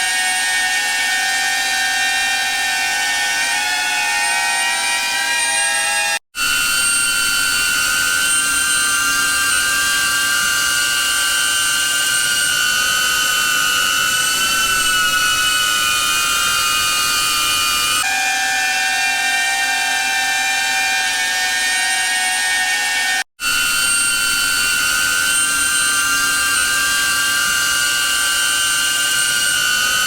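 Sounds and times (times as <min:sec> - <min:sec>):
drone propellers whining: 0:00.0 - 0:30.0.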